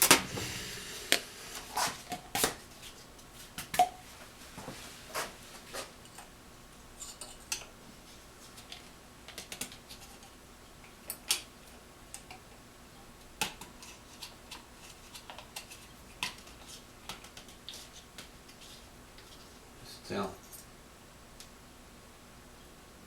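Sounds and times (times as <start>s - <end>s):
small tools clicking and tapping: 7.0s - 7.7s.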